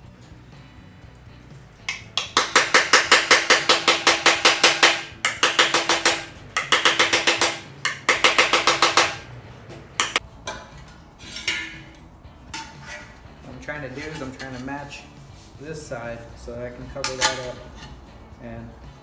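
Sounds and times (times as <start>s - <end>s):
hammer ringing on sheet metal: 1.9s - 9.3s, 10.0s - 10.2s.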